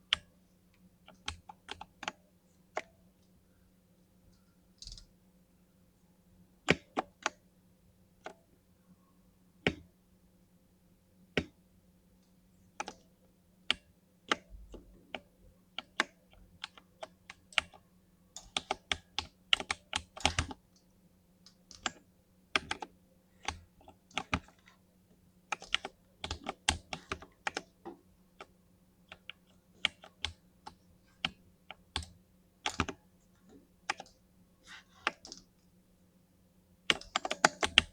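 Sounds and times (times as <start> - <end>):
typing on mechanical keyboard: 18.4 - 20.6, 21.7 - 24.8, 25.5 - 27.8, 28.4 - 33.0, 33.8 - 35.5, 36.9 - 37.9.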